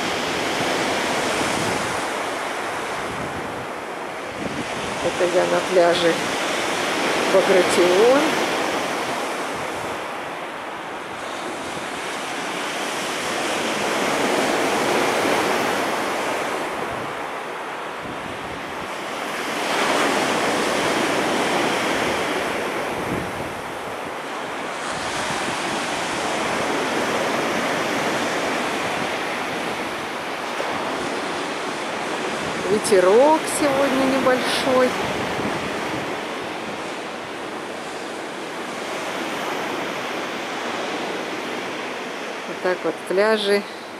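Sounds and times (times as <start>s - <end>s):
stormy surf breaking on beach: 0.0s - 43.9s.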